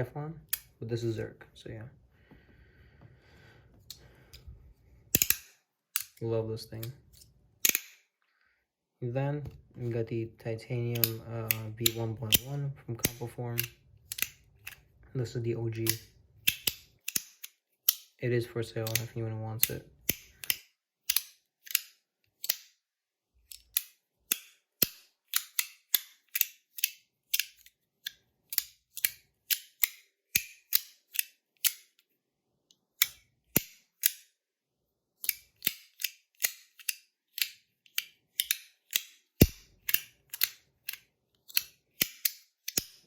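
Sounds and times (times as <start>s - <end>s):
metal slider fidget clicking: 5.1s - 6.2s, 6.8s - 8.0s, 10.9s - 14.8s, 15.8s - 18.2s, 18.8s - 22.7s, 33.0s - 34.3s, 35.2s - 43.0s.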